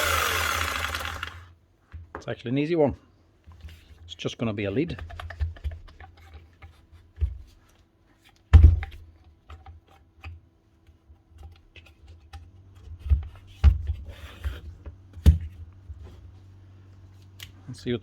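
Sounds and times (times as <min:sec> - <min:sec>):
tool handling clicks and knocks: 0:04.8 - 0:07.5.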